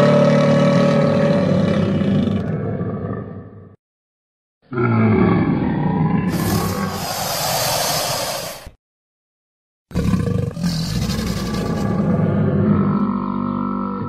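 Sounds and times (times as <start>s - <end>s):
creature roaring: 0.0s - 3.8s, 4.7s - 8.7s, 9.9s - 14.0s
hissing: 6.2s - 8.8s.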